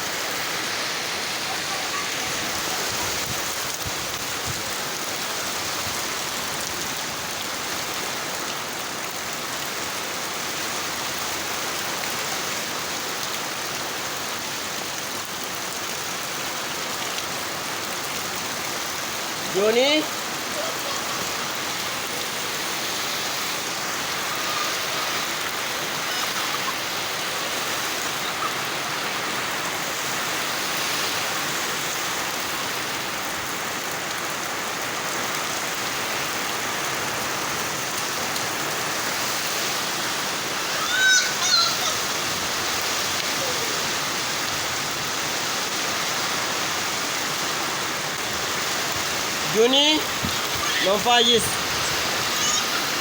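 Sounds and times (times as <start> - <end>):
rain pouring: 0.0 - 53.0
high-pitched vocal cry: 20.5 - 21.3, 40.6 - 42.3, 49.5 - 53.0.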